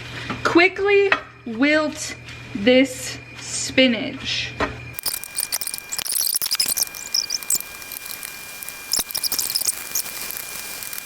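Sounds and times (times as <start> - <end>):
spinach sizzling in oil: 5.0 - 11.0.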